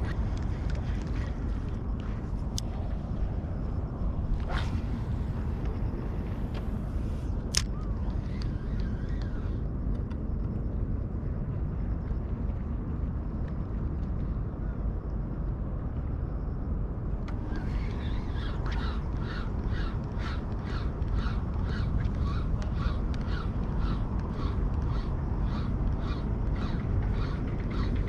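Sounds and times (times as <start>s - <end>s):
water: 0.0s - 10.0s
wind: 0.0s - 28.0s.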